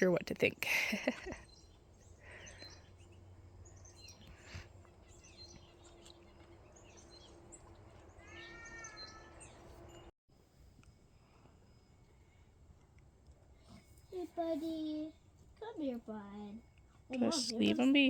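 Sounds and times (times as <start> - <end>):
birds chirping: 0.0 - 10.1
arched bird call: 8.1 - 9.6.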